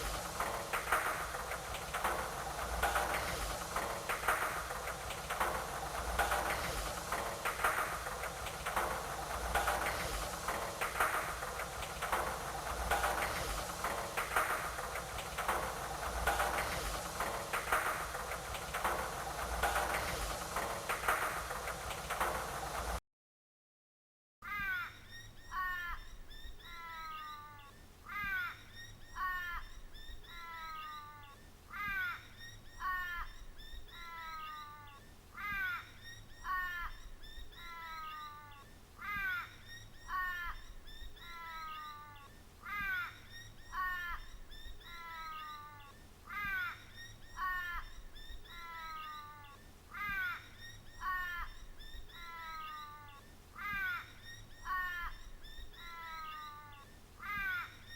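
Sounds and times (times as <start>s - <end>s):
bird-like falling calls: 24.4s - 57.9s.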